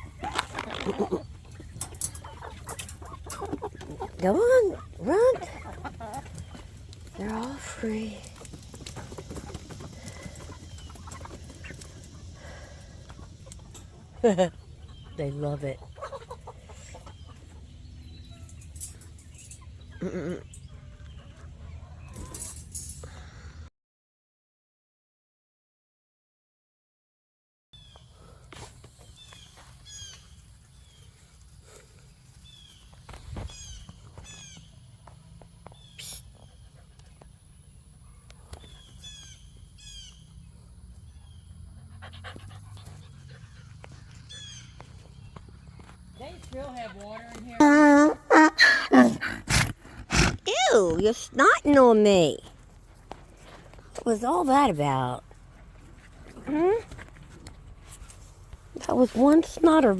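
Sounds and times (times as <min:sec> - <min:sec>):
dog panting: 0:41.7 - 0:44.3
farm animal wavering call: 0:47.6 - 0:49.3.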